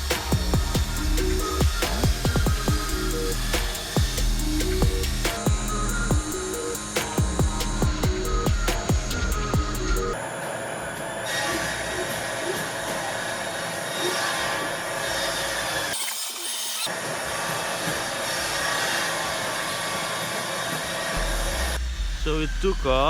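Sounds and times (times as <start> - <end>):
drone buzzing hum: 0.0 - 10.2.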